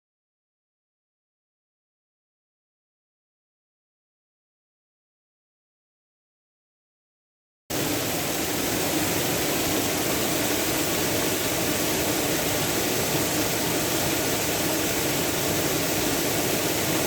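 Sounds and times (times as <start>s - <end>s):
waterfall rushing: 7.7s - 17.0s.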